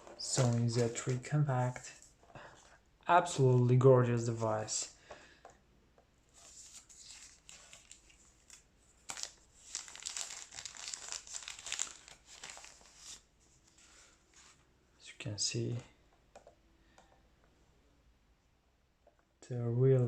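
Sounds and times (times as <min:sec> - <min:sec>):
plastic packaging crinkling: 0:00.0 - 0:01.2, 0:06.6 - 0:13.2.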